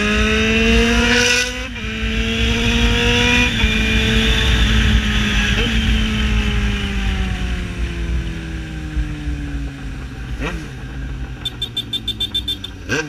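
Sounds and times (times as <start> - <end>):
motorcycle engine slowing: 1.5 - 13.0
rapid ticking: 9.8 - 13.0.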